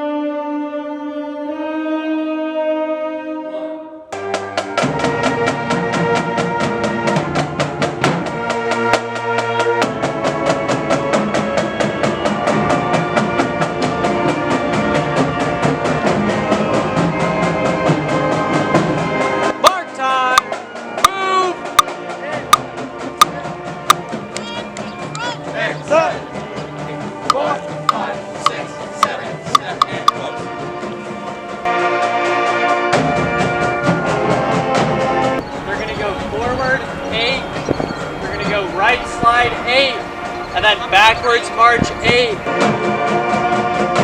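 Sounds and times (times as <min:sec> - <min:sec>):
marching band playing: 0:04.2 - 0:19.6, 0:20.5 - 0:43.7
voices: 0:22.2 - 0:31.6, 0:35.4 - 0:42.5
brass chord: 0:30.4 - 0:34.3, 0:35.1 - 0:43.1
drums beating: 0:35.4 - 0:42.5.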